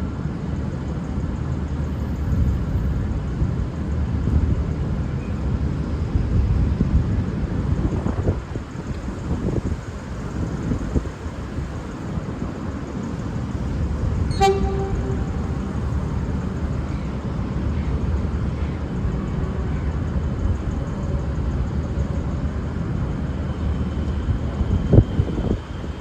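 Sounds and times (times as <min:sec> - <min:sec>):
low rumble: 0:13.8 - 0:17.0
train horn toot: 0:14.3 - 0:16.2.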